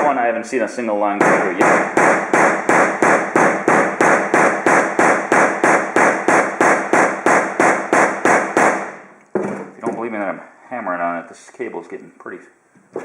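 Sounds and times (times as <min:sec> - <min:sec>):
hammer striking a cable: 0:01.2 - 0:09.5.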